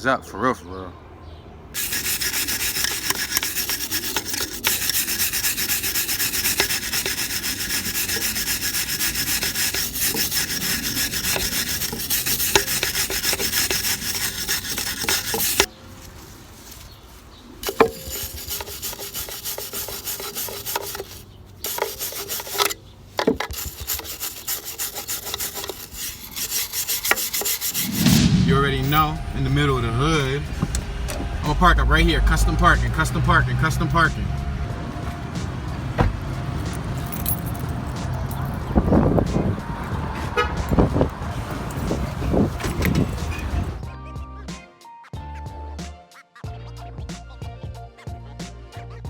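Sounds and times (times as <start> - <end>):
scrubbing rust off metal pipe: 1.8 - 34.3, 39.8 - 43.8.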